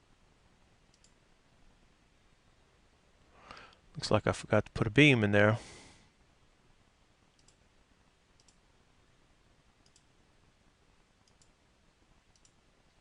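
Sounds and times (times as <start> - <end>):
computer mouse clicks: 0.9 - 1.2, 7.4 - 7.6, 8.4 - 8.6, 9.8 - 10.1, 11.2 - 11.6, 12.3 - 13.0.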